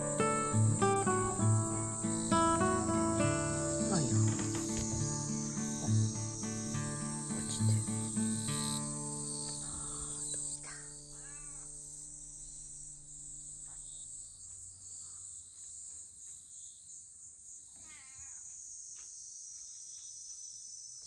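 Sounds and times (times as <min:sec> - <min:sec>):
background music: 0:00.0 - 0:11.3
high insect drone: 0:00.0 - 0:21.0
crows cawing: 0:09.5 - 0:11.8.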